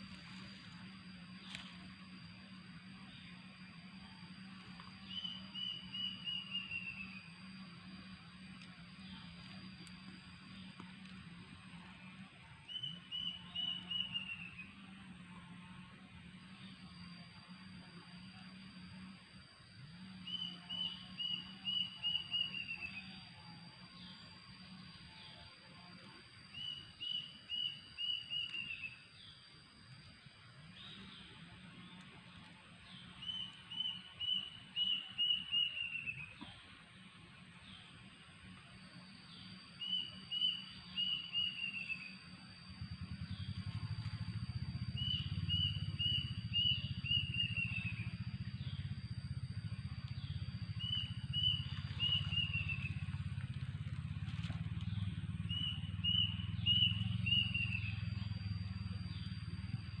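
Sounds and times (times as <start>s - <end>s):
steady high whine: 0.0s - 60.0s
bird calling in descending notes: 4.2s - 8.1s, 12.6s - 14.8s, 26.4s - 30.2s, 32.9s - 36.5s, 39.1s - 60.0s.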